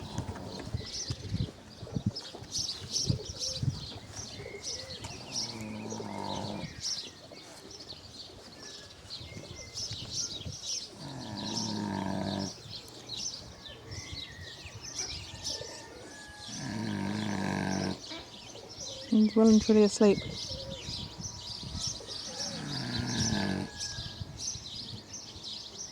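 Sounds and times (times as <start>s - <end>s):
pig snoring: 0.0s - 0.9s, 5.1s - 6.9s, 10.9s - 12.6s, 16.4s - 18.1s, 22.3s - 23.8s
small birds chirping: 0.0s - 25.9s.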